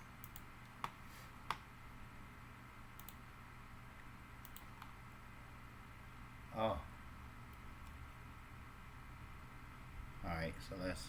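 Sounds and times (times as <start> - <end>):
faint room hum: 0.0 - 11.0
computer mouse clicks: 0.2 - 1.7, 3.0 - 3.2, 4.4 - 5.0.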